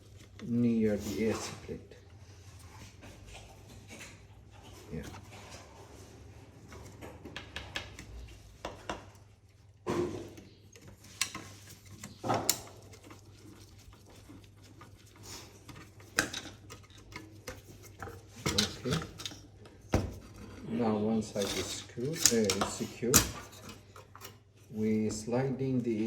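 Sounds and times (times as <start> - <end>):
small parts and screws clattering: 15.6 - 19.6, 21.3 - 24.4.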